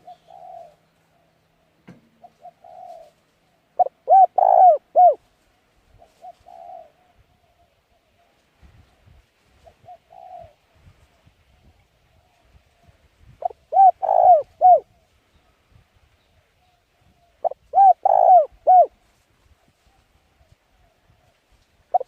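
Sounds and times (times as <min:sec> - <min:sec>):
bird calling: 0:00.0 - 0:01.3, 0:02.2 - 0:03.2, 0:03.8 - 0:05.2, 0:06.0 - 0:08.1, 0:13.4 - 0:14.9, 0:16.6 - 0:18.9.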